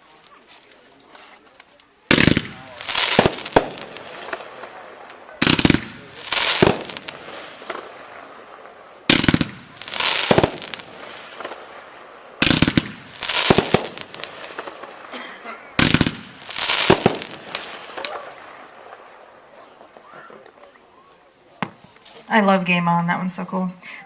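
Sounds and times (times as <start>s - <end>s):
firework launch reports: 2.0s - 15.1s, 15.7s - 23.4s
crackling firework breaks: 2.1s - 15.1s, 15.8s - 19.2s.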